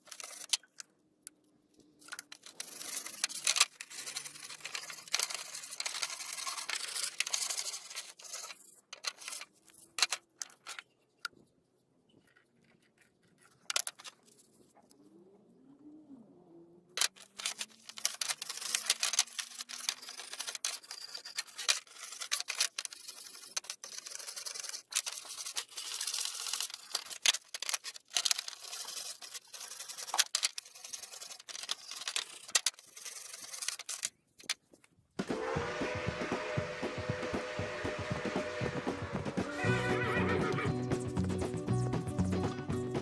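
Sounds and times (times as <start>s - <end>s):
music: 35.2s - 43.0s.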